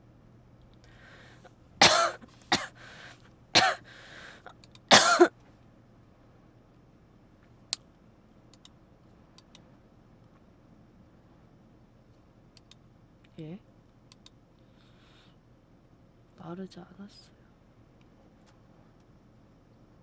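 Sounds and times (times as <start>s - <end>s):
breathing: 0.8s - 1.5s, 2.7s - 4.5s, 14.6s - 15.4s
person coughing: 1.8s - 4.0s, 4.9s - 5.3s.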